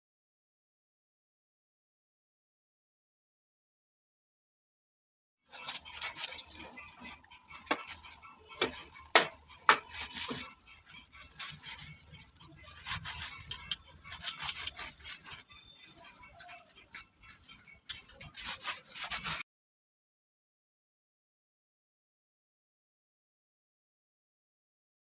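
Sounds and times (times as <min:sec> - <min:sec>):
rubbing and scrubbing: 0:05.5 - 0:19.4
objects knocking and clattering: 0:07.6 - 0:10.5.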